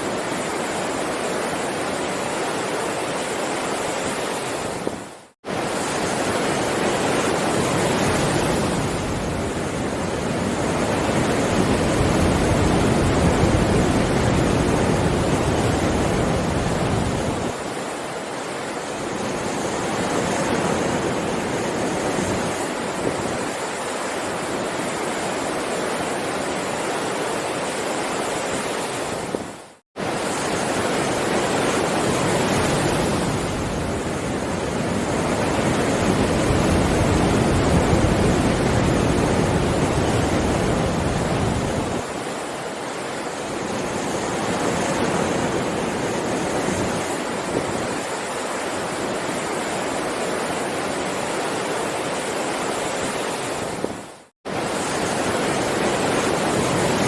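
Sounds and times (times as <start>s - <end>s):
heavy ocean surf: 0.0s - 57.0s.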